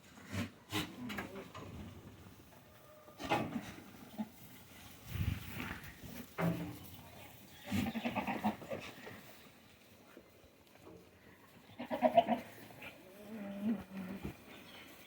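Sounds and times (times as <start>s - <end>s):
goats bleating: 7.6s - 8.8s, 11.7s - 14.2s.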